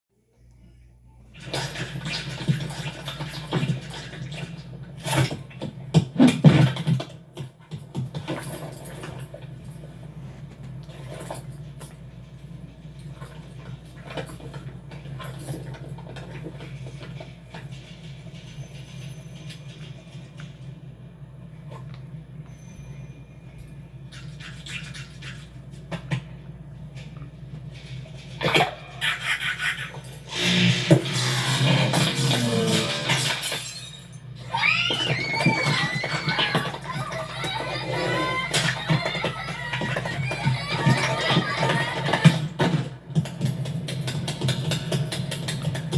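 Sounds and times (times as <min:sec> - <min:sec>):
steady low hum: 0:03.8 - 0:34.5.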